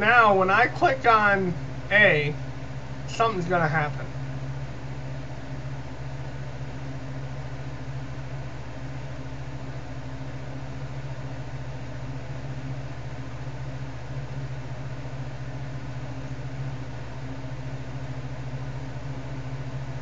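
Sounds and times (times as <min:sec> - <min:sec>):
constant hiss: 0:00.0 - 0:04.9
low electrical hum: 0:00.0 - 0:20.0.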